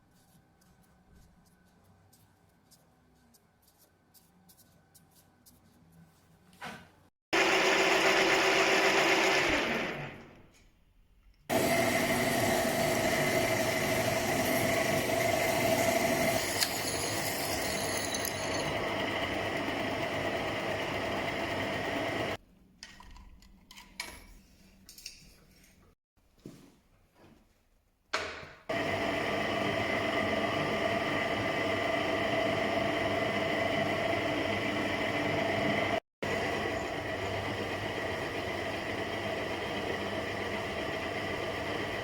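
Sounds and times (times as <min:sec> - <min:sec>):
electric power tool running: 0:07.4 - 0:10.3, 0:11.5 - 0:22.4.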